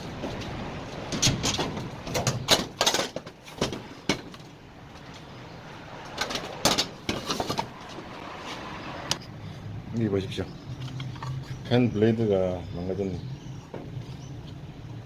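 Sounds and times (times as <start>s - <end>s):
dryer parts clanking: 0.3s - 5.3s.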